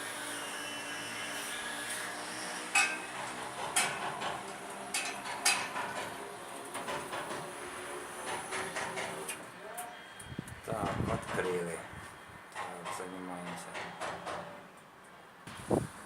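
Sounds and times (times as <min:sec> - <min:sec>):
metal knocks and clanks: 0:02.8 - 0:06.2, 0:06.8 - 0:07.6, 0:08.2 - 0:09.3, 0:10.7 - 0:11.8, 0:12.6 - 0:14.6.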